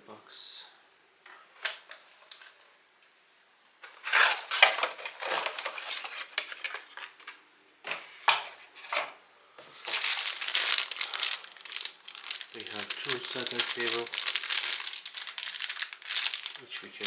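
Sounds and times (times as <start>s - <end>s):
packaging rustling and clattering: 4.0s - 8.0s, 9.7s - 17.0s.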